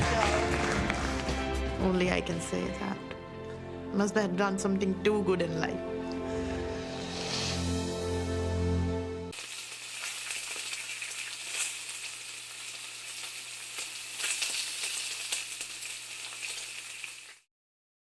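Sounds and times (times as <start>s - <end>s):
oil crackling and spitting: 9.3s - 17.4s
food sizzling in a pan: 9.3s - 17.5s.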